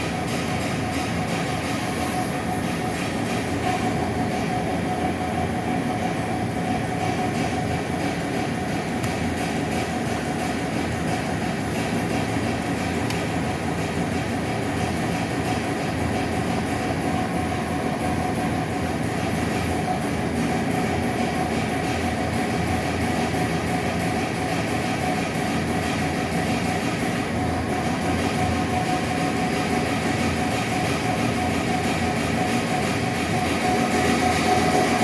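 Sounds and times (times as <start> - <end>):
steady mechanical rumble: 0.0 - 35.0.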